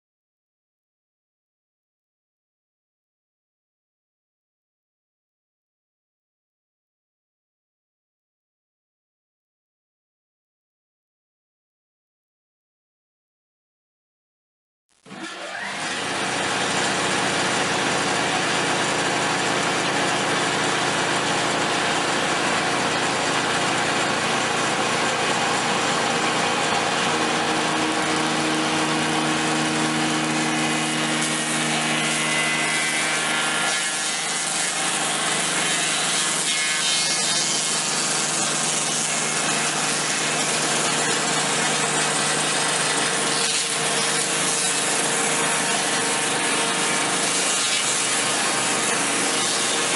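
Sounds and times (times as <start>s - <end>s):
machine motor running under load: 15.1s - 49.9s.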